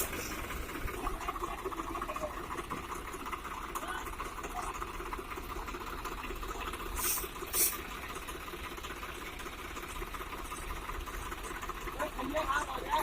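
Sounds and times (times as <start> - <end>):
tractor diesel engine clattering: 0.0 - 13.0
short hissing bursts: 7.0 - 7.8.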